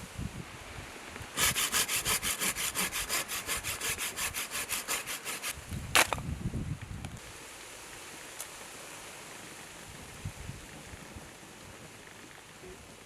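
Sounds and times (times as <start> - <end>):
rapid rasping strokes: 1.4 - 5.6.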